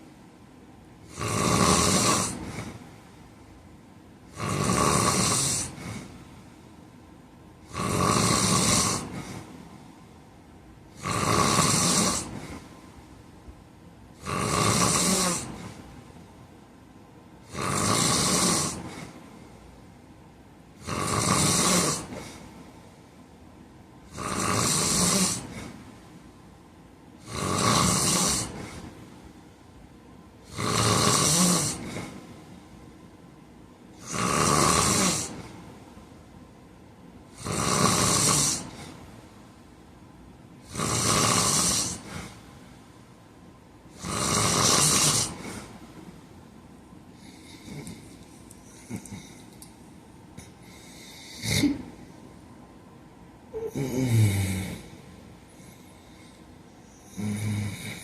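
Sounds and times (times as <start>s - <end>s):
quiet breathing: 0.0s - 27.4s, 28.1s - 34.1s, 34.9s - 52.6s, 53.5s - 58.0s
man snoring: 1.0s - 2.8s, 4.3s - 6.1s, 7.6s - 9.4s, 11.0s - 12.6s, 14.2s - 15.7s, 17.4s - 19.2s, 20.8s - 22.4s, 24.1s - 25.8s, 27.2s - 28.8s, 30.4s - 32.1s, 34.0s - 35.5s, 37.4s - 38.9s, 40.6s - 42.3s, 43.9s - 45.7s, 47.2s - 49.4s, 50.4s - 51.9s, 53.5s - 55.0s, 55.6s - 58.0s.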